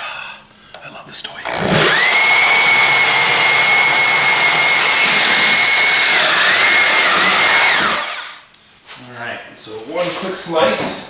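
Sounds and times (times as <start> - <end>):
angle grinder whining: 1.4 - 8.5.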